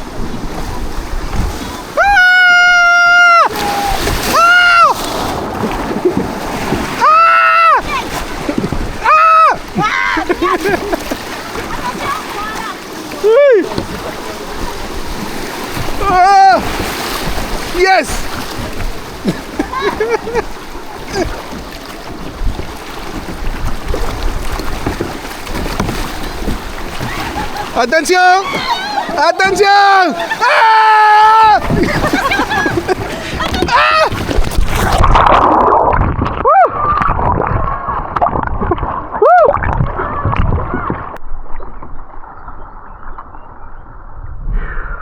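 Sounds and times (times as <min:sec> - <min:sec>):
wind buffeting microphone: 0:00.0 - 0:02.2, 0:03.5 - 0:07.1, 0:31.2 - 0:45.0
river water rushing: 0:00.0 - 0:35.8
person shouting: 0:02.0 - 0:05.0, 0:07.0 - 0:08.1, 0:09.0 - 0:10.6, 0:16.0 - 0:16.6, 0:28.3 - 0:31.7, 0:33.4 - 0:34.1.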